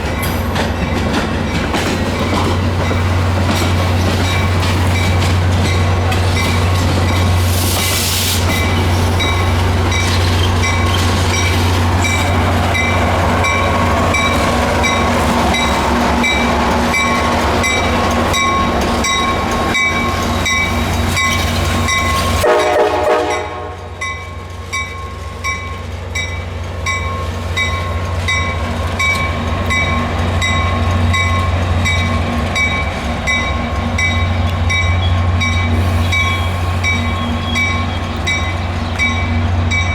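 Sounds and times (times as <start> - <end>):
diesel locomotive engine drone: 0.0 - 39.9
train horn blast: 22.4 - 24.0.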